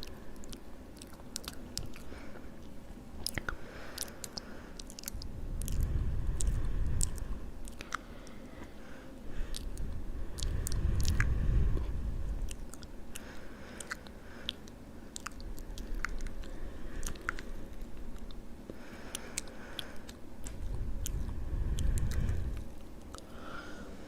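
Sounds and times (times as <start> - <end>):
lip smacks and tongue clicks: 0.0 - 8.8, 9.4 - 23.4
low rumble: 5.0 - 13.2, 20.3 - 24.0.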